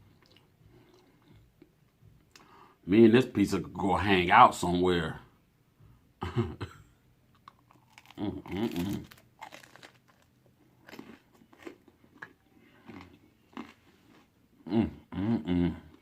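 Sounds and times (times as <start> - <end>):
person chewing food: 0.0 - 1.7, 7.3 - 14.9
person humming: 8.2 - 9.1, 14.6 - 16.0.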